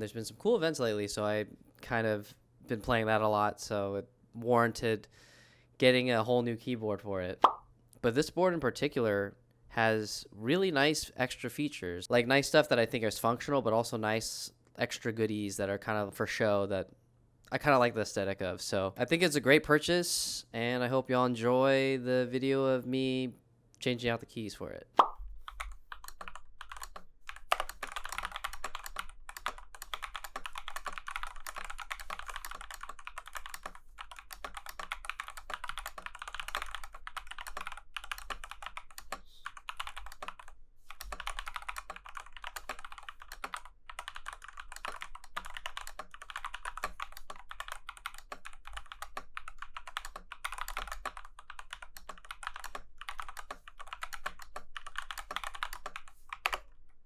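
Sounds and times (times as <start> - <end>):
mechanical keyboard typing: 25.5 - 56.7.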